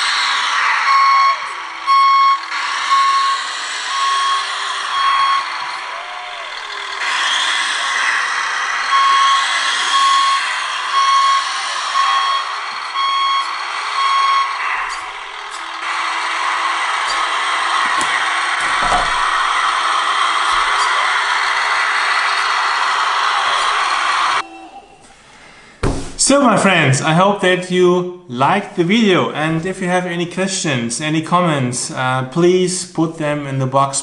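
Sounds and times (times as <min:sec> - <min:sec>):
rising and falling whines: 0:00.0 - 0:25.5
backup alarm beeps: 0:00.8 - 0:05.9, 0:08.9 - 0:15.6, 0:24.4 - 0:25.2
whir of motors and hydraulics: 0:00.9 - 0:22.6.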